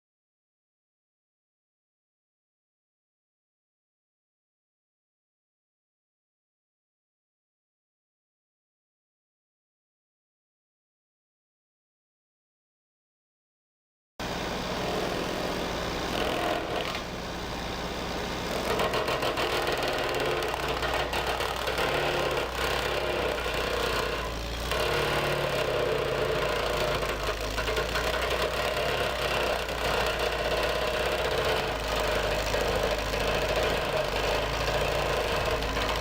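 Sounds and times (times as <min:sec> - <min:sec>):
brush cutter engine running: 0:14.2 - 0:36.0.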